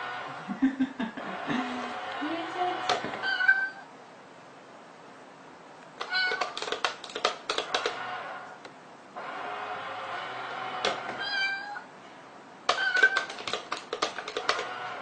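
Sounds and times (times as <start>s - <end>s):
cat meowing: 3.2s - 3.9s, 6.0s - 6.6s, 11.2s - 11.9s, 12.7s - 13.4s
clicks and taps: 5.9s - 8.0s, 12.7s - 14.7s.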